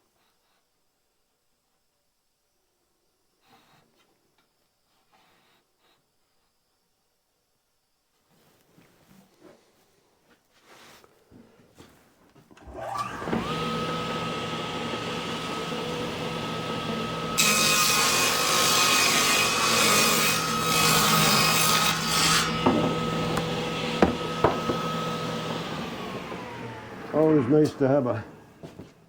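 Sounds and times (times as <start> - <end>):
saw blade cutting wooden board: 12.6 - 28.9
electric saw motor whine: 12.6 - 29.0.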